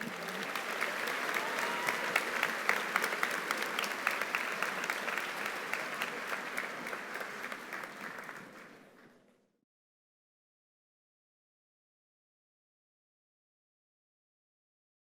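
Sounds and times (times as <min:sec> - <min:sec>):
audience applauding: 0:00.0 - 0:09.2.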